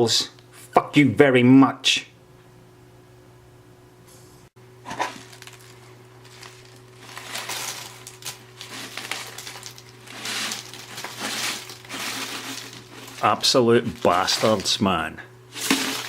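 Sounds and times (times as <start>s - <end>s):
crunching and rustling: 4.8s - 16.0s.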